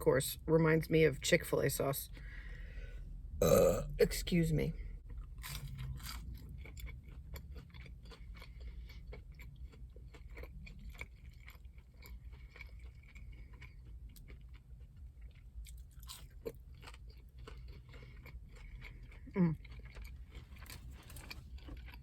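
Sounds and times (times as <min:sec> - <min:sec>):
person chewing food: 0:03.4 - 0:03.8, 0:05.0 - 0:22.0.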